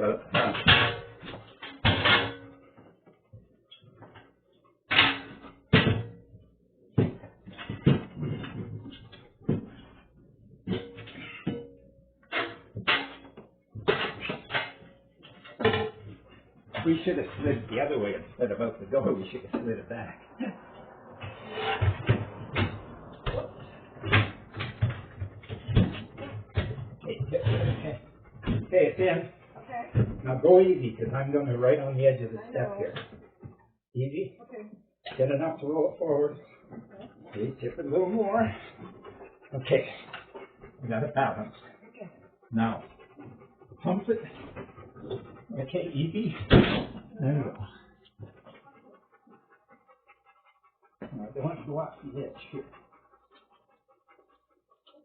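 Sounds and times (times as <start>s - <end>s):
rattling and scraping: 7.2s - 31.3s.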